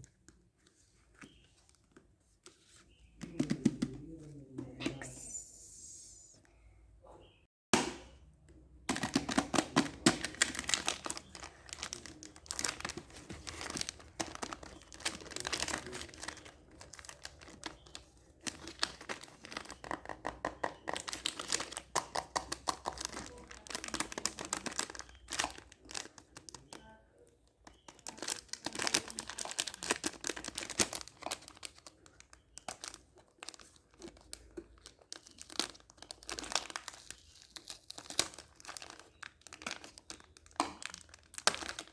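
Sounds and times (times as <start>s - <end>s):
plastic packaging crinkling: 8.9s - 20.2s, 20.8s - 26.8s, 27.7s - 41.9s.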